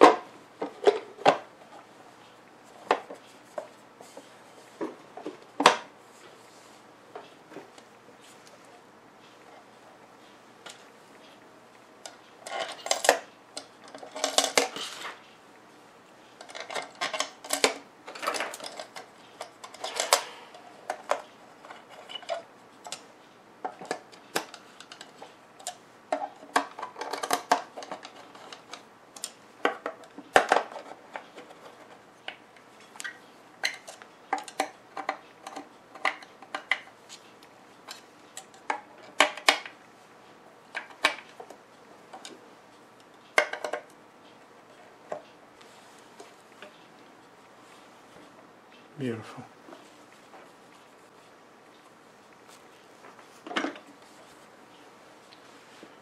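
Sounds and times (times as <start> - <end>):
faint steady hum: 0.0 - 56.0
small hard parts clattering: 12.4 - 15.1, 16.4 - 23.0, 23.6 - 32.0.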